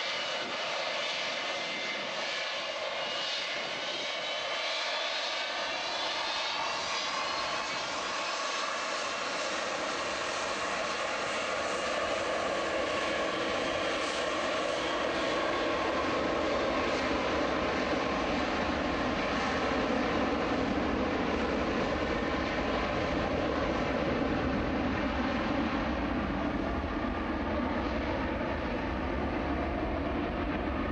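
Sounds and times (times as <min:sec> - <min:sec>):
jet engines roaring and whining: 0:00.0 - 0:30.9.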